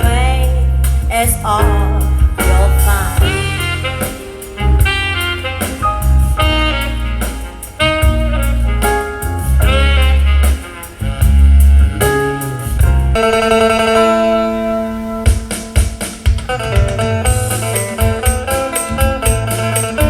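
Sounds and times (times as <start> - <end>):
music through speaker: 0.0 - 9.8.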